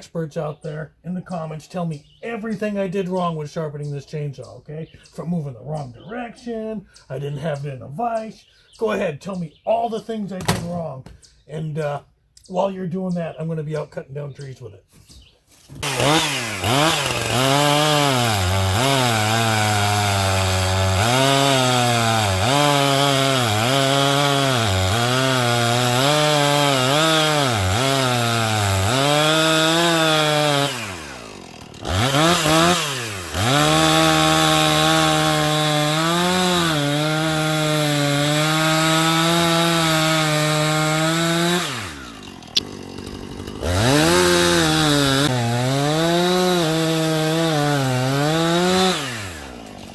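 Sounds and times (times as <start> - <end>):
chainsaw cutting wood: 10.4 - 10.8, 15.6 - 49.9.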